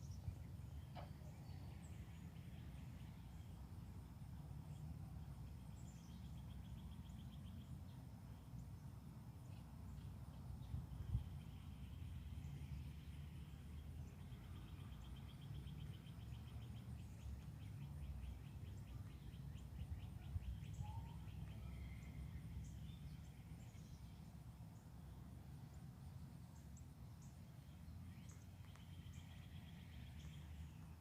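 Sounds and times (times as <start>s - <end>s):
low steady rumble: 0.0s - 31.0s.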